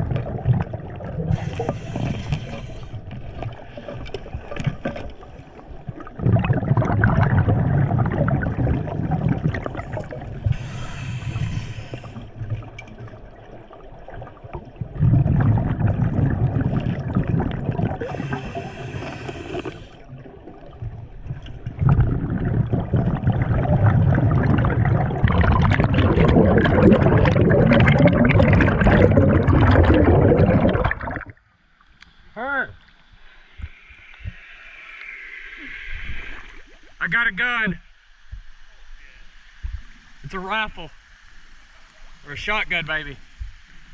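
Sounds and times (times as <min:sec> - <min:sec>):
exhaled air bubbling: 0:00.0 - 0:31.4, 0:33.0 - 0:37.0
inhaled air hissing: 0:01.3 - 0:03.1, 0:09.8 - 0:12.4, 0:18.0 - 0:20.1, 0:32.0 - 0:36.8.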